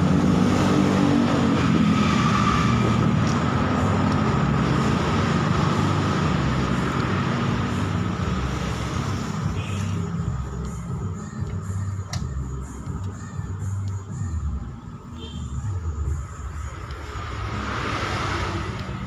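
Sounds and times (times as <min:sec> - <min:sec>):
engine running: 0:00.0 - 0:14.8.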